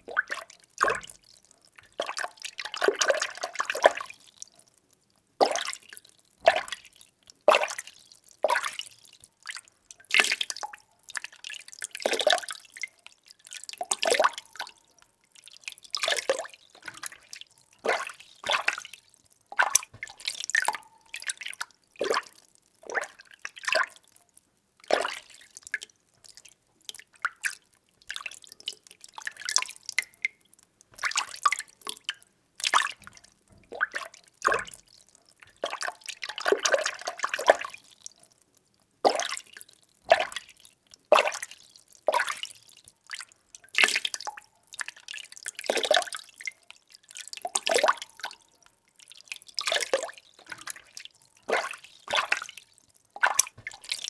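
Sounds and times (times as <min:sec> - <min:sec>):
water sloshing and splashing: 0:15.9 - 0:24.0, 0:31.0 - 0:37.8, 0:49.5 - 0:54.0.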